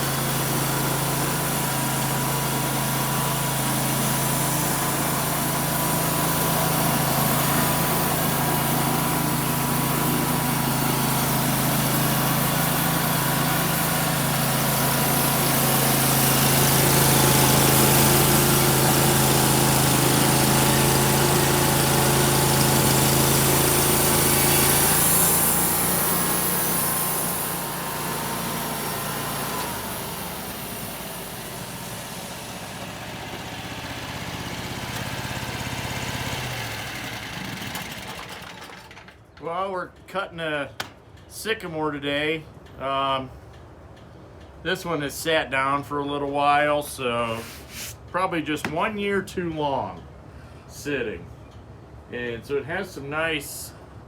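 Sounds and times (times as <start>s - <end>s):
sawmill engine running: 0.0s - 40.1s.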